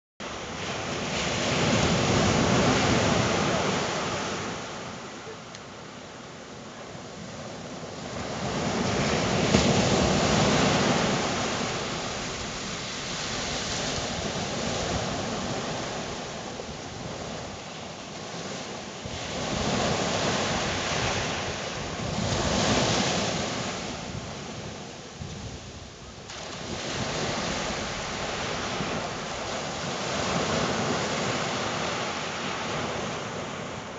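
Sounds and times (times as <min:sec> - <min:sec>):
surf breaking on beach: 0:00.2 - 0:05.5, 0:07.2 - 0:33.9
wind buffeting microphone: 0:07.0 - 0:33.9.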